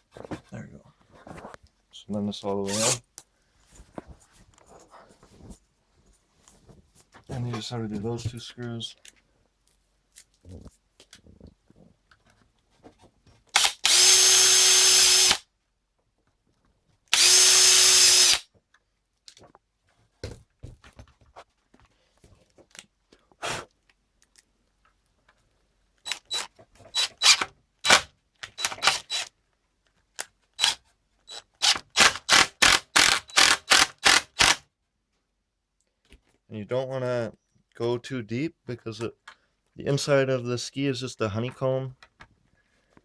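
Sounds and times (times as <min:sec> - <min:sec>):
power drill driving screws: 0:02.7 - 0:03.0, 0:13.5 - 0:15.4, 0:17.1 - 0:18.4, 0:26.1 - 0:29.3, 0:30.6 - 0:34.6.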